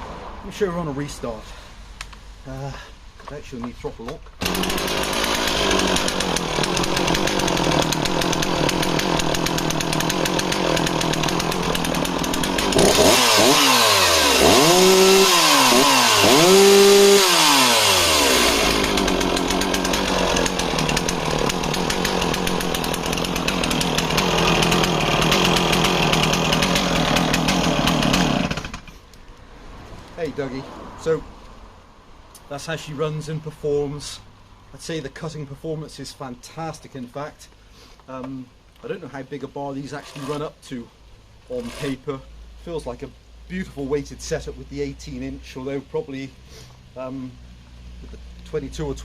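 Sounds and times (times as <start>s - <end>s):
chainsaw revving: 4.4s - 29.0s.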